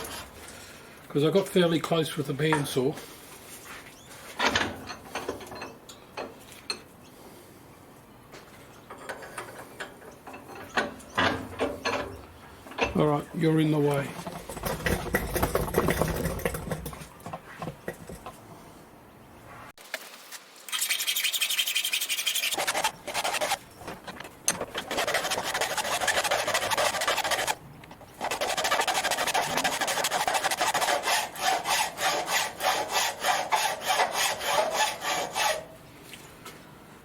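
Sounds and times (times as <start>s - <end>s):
file scraping metal: 21.2s - 23.6s, 24.5s - 27.6s, 28.2s - 35.8s.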